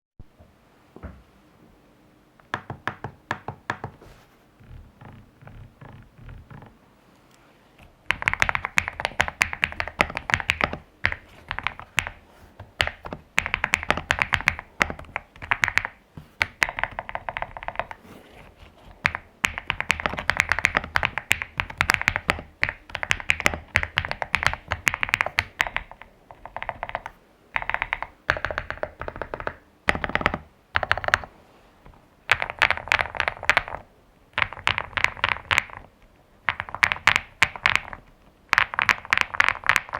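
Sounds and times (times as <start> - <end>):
mechanical keyboard typing: 8.1 - 18.0, 18.9 - 31.3, 32.3 - 39.9.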